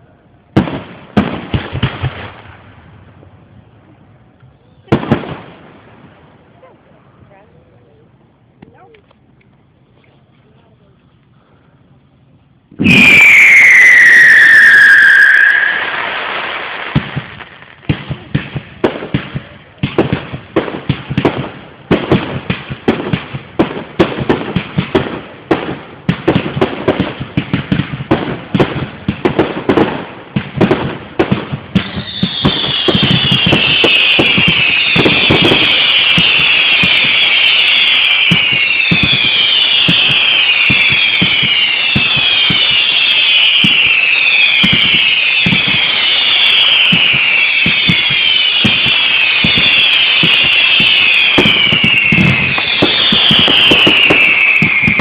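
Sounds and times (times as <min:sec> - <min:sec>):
firework bangs and crackles: 0:00.0 - 0:07.5, 0:11.8 - 0:55.0
firework whistles falling: 0:12.8 - 0:17.8, 0:31.7 - 0:55.0.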